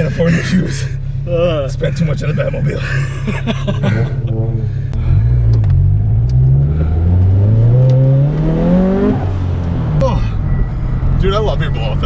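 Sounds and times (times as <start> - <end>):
car engine accelerating hard: 2.4 - 12.0.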